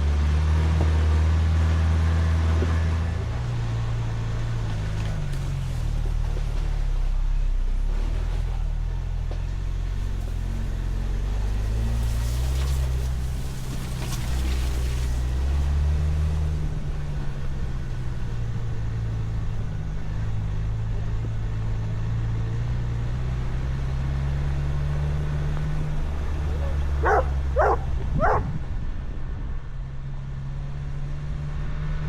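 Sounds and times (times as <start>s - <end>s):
engine running under load: 0.0s - 32.0s.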